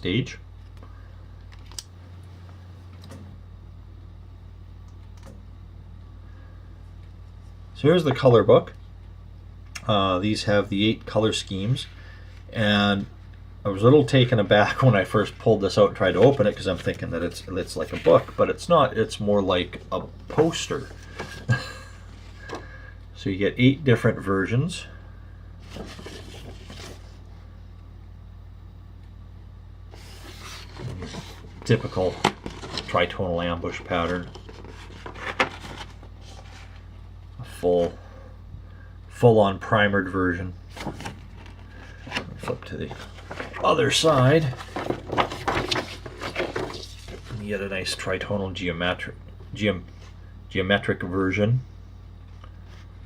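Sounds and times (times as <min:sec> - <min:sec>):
low electrical hum: 0:00.0 - 0:53.0
paper handling clicks: 0:01.4 - 0:01.9, 0:40.7 - 0:47.3
paper rustling: 0:16.0 - 0:18.4, 0:25.6 - 0:27.2, 0:29.9 - 0:36.9, 0:40.7 - 0:47.4.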